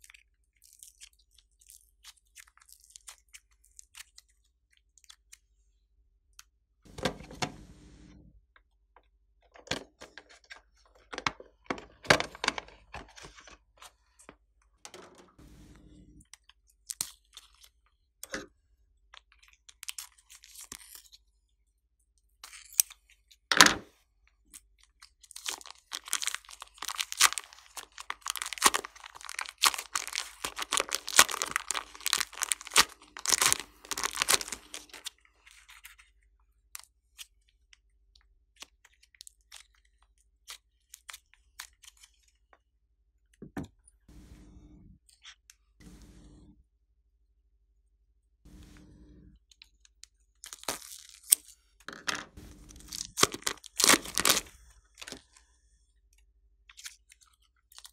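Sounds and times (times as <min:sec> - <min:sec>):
slime squished by hand: 0:25.3 - 0:35.2, 0:52.7 - 0:55.2.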